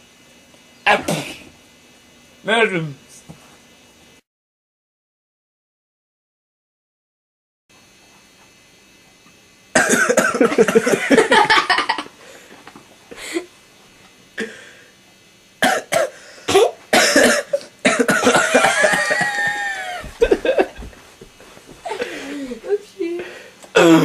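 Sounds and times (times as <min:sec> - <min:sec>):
harsh coughing: 0:00.9 - 0:01.5, 0:09.8 - 0:11.5, 0:15.6 - 0:20.8, 0:23.7 - 0:24.0.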